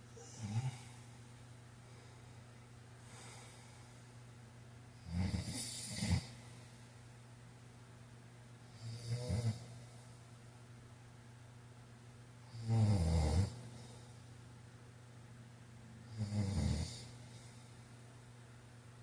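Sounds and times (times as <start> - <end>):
steady low hum: 0.0 - 19.0
man snoring: 0.2 - 1.0, 5.0 - 6.4, 8.8 - 9.8, 12.5 - 13.8, 16.1 - 17.2.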